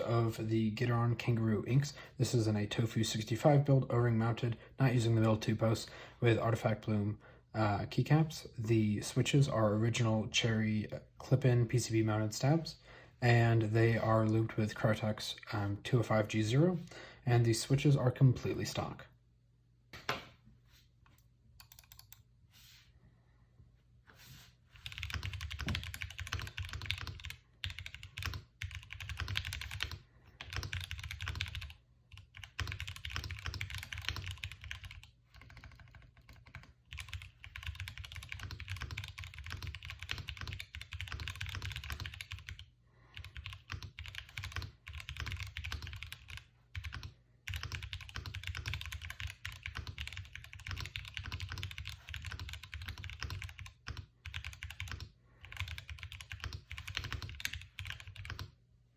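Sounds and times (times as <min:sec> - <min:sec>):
mechanical keyboard typing: 0:21.6 - 0:22.2, 0:24.8 - 0:58.5.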